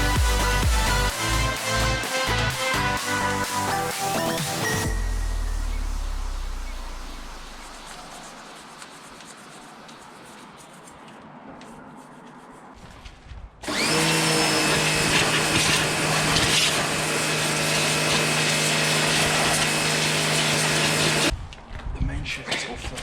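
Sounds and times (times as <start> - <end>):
music: 0.0 - 6.5
electric motor whining: 13.6 - 21.3.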